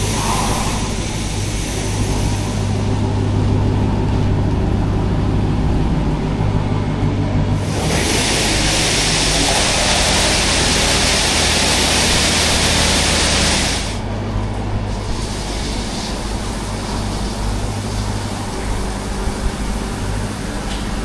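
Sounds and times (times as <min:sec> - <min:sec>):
high-pressure water spray hissing: 0:00.0 - 0:03.0, 0:07.6 - 0:14.0, 0:14.9 - 0:19.7
low hum: 0:00.0 - 0:12.8.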